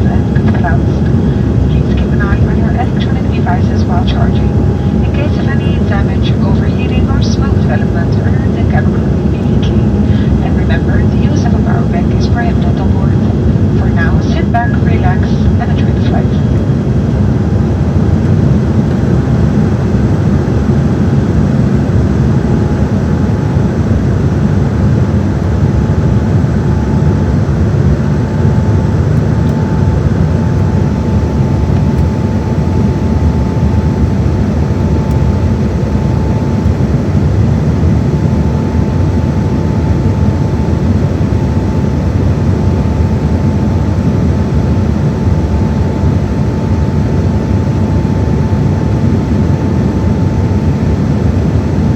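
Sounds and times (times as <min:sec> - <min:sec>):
airliner cabin rumble: 0:00.0 - 0:51.9
jet engine whine: 0:00.0 - 0:51.9.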